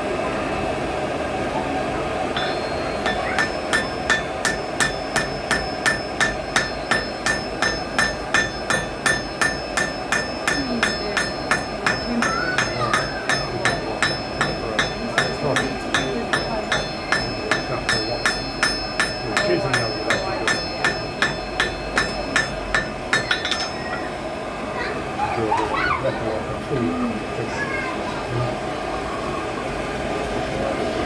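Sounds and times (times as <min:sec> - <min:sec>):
hammer ringing on anvil: 0:02.4 - 0:24.1.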